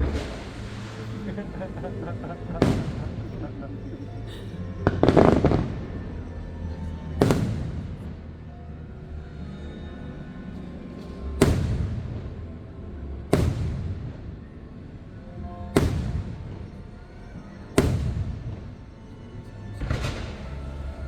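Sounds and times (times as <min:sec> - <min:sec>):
fireworks bangs with rumbling echo: 0:00.0 - 0:03.7, 0:04.8 - 0:06.0, 0:07.2 - 0:08.2, 0:11.4 - 0:12.4, 0:13.2 - 0:14.4, 0:15.7 - 0:16.8, 0:17.7 - 0:18.8, 0:19.8 - 0:20.8
orchestral music: 0:00.0 - 0:21.0.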